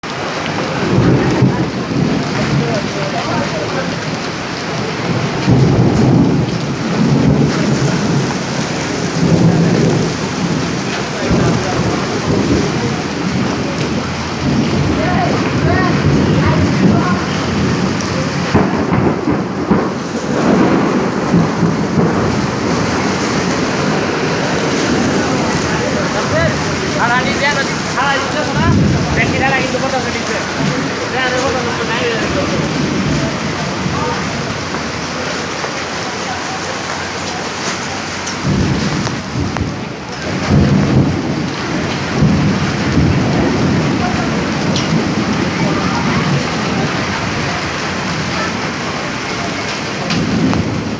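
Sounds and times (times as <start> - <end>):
heavy rain pouring: 0.0 - 50.9
low rumbling: 4.8 - 35.2.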